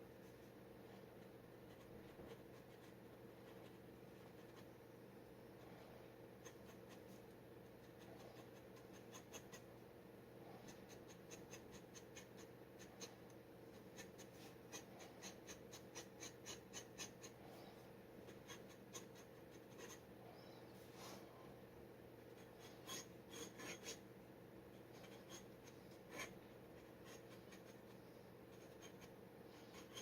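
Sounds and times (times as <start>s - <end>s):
dip pen scratching on paper: 1.7s - 4.8s, 6.4s - 9.7s, 10.5s - 17.4s, 18.2s - 20.0s, 22.3s - 24.0s, 24.8s - 30.0s.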